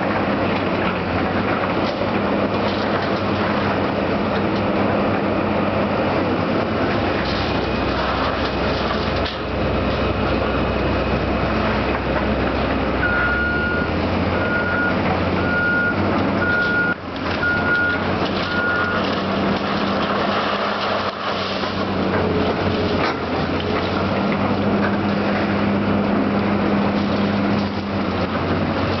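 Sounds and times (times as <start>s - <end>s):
diesel machinery running: 0.0s - 29.0s
reversing alarm beeping: 13.0s - 19.1s.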